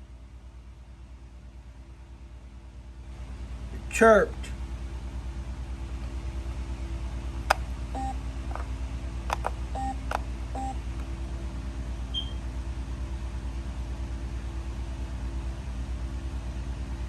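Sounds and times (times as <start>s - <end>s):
steady low hum: 0.0s - 17.0s
sharp clicks: 9.3s - 10.2s
smoke alarm beeps: 12.1s - 12.4s.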